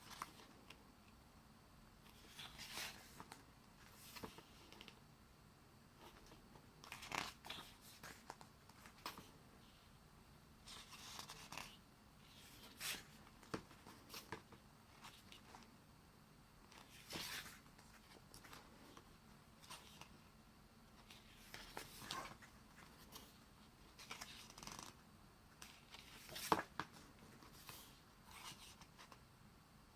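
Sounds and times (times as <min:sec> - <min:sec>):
book pages turning: 0:02.1 - 0:05.0, 0:06.0 - 0:09.3, 0:16.7 - 0:20.2, 0:21.0 - 0:25.0, 0:25.6 - 0:29.2.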